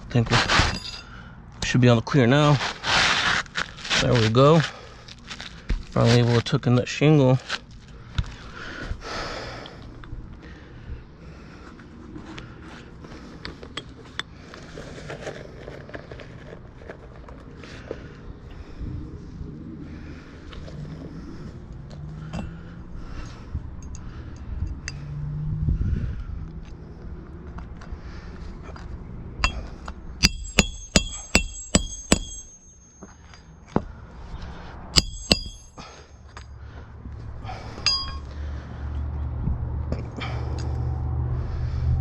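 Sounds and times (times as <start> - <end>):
sharp metallic clinks: 0.7 - 1.2, 29.4 - 33.6, 35.0 - 36.5, 37.7 - 38.3.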